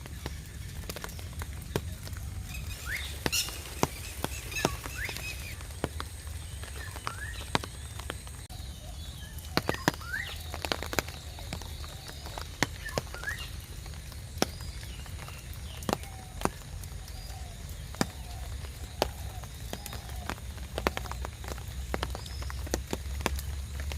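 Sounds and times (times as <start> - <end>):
raindrops dripping: 0.0 - 23.9
rising bird chirps: 2.4 - 13.6.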